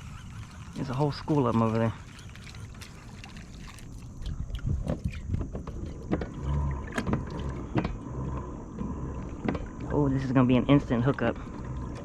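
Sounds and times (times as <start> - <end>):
water sloshing against kayak hull: 0.0 - 12.0
knocks and taps on boat: 4.6 - 8.0, 8.7 - 10.1.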